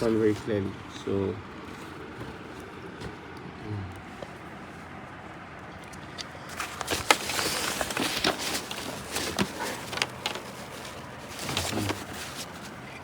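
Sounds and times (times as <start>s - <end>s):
rustling: 6.4s - 13.0s.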